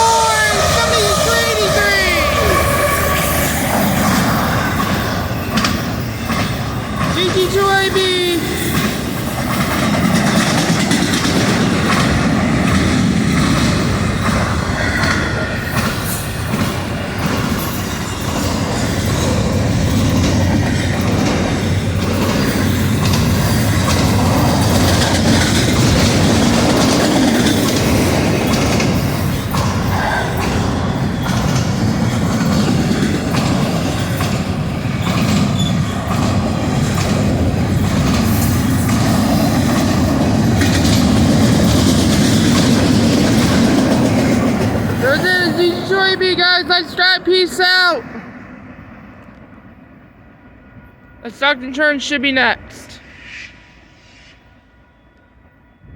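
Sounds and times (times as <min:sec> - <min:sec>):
freight train wheels rumbling: 0:00.0 - 0:55.9.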